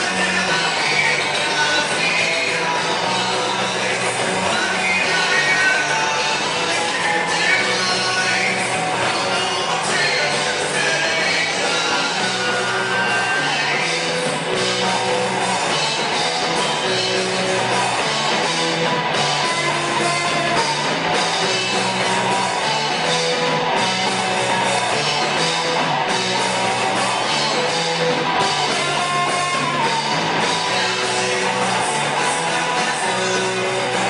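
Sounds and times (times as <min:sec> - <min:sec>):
rock band playing: 0:00.0 - 0:34.0.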